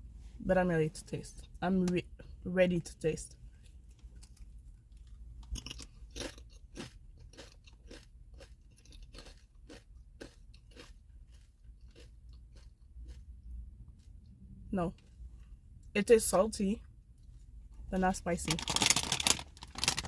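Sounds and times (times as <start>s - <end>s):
potato chip being chewed: 4.0s - 14.3s.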